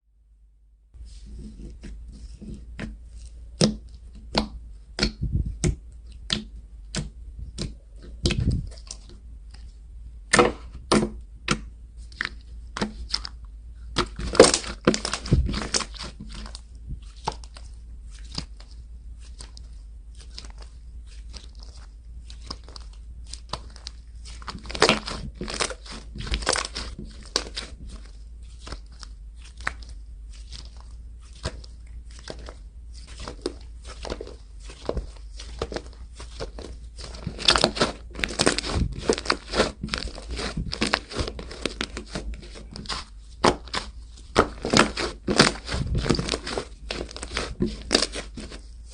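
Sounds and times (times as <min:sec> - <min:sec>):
slime popping and crackling: 0:10.3 - 0:48.9.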